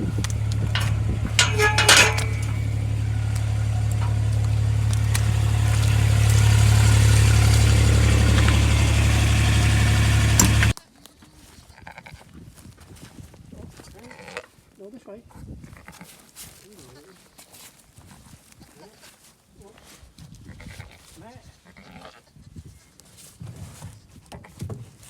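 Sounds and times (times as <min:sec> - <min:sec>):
sharp clinks: 0:00.0 - 0:10.7
vehicle engine running: 0:00.0 - 0:10.8.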